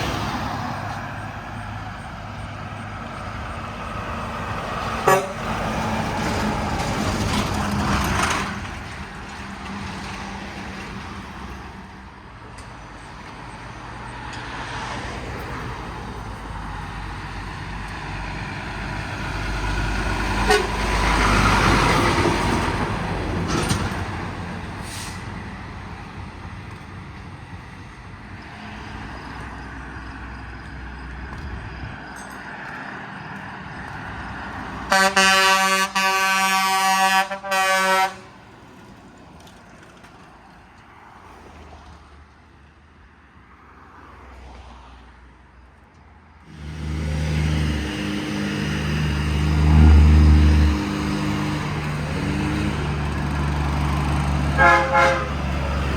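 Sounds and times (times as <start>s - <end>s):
heavy vehicle engine passing: 0.0s - 40.6s, 46.5s - 55.9s
road noise: 0.0s - 55.9s
truck air horn blasts: 5.0s - 5.8s, 20.2s - 21.4s, 34.9s - 38.4s, 46.5s - 52.8s, 54.5s - 55.9s.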